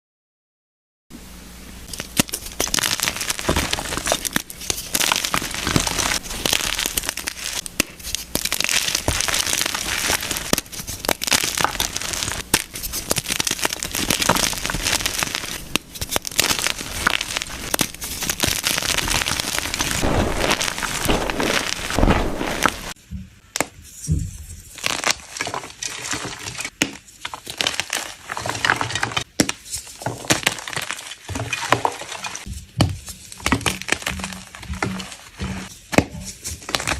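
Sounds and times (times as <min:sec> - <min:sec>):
chalk crunching in a bucket: 0:01.9 - 0:23.0.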